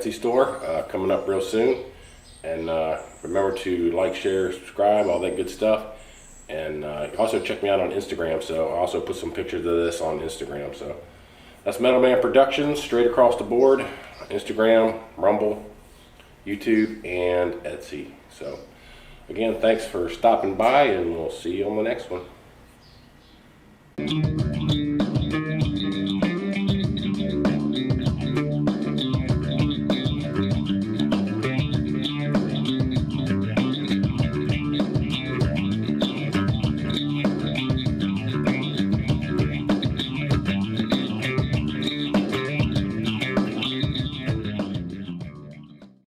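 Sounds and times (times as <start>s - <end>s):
rock guitar and bass music: 24.0s - 46.0s.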